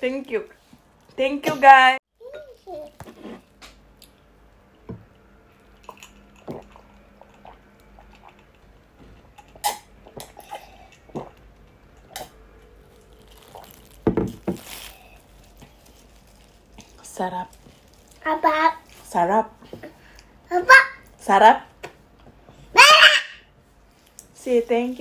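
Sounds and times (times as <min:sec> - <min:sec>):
small wet dripping sounds: 0:03.9 - 0:12.3.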